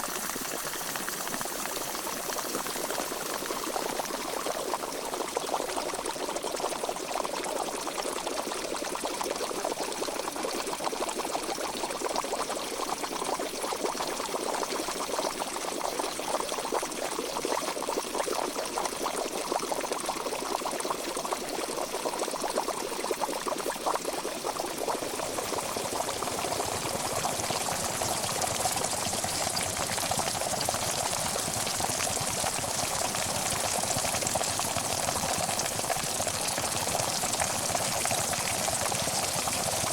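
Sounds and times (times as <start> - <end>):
water boiling in pot: 0.0 - 39.9.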